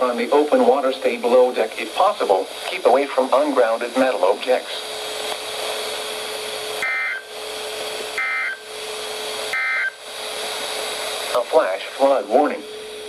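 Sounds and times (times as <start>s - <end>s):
radio hiss: 0.0s - 12.7s
two-tone data warble: 6.8s - 7.3s, 8.2s - 8.7s, 9.5s - 10.0s.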